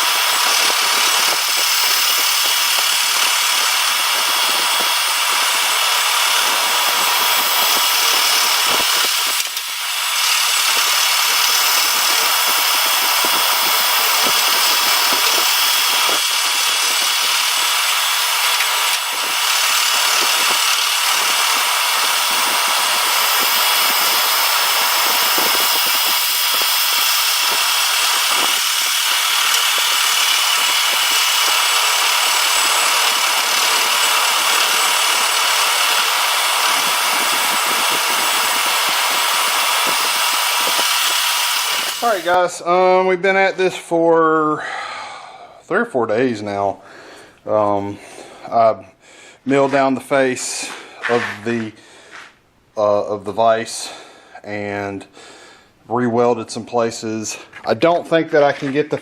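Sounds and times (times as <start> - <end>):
power tool whining on metal: 0.0 - 42.5.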